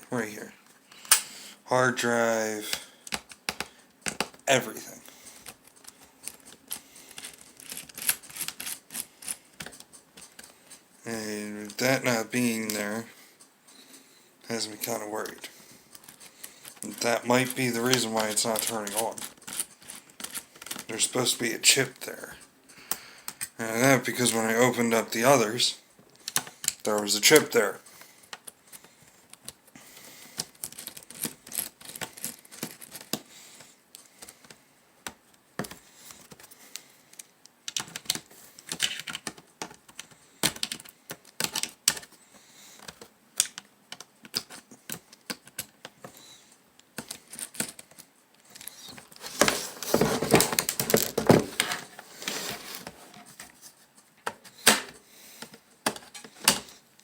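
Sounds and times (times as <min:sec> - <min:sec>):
plastic and metal parts clicking: 0:37.1 - 0:42.1.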